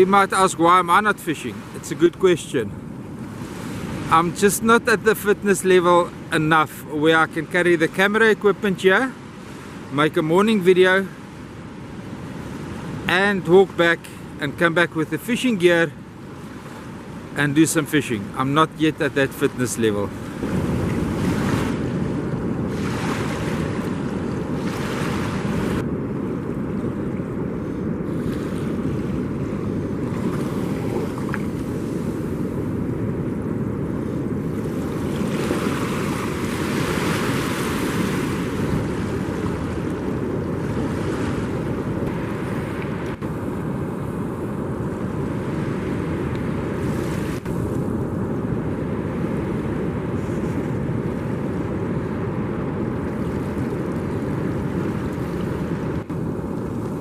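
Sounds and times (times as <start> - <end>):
ocean surf washing on beach: 0.0 - 57.0
wind rumble on microphone: 0.0 - 57.0.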